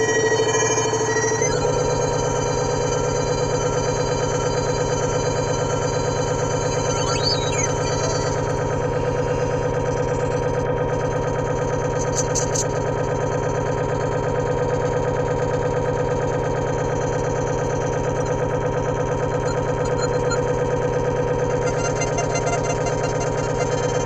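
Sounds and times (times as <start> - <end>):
synthesizer buzzing drone: 0.0 - 12.7, 21.3 - 24.0.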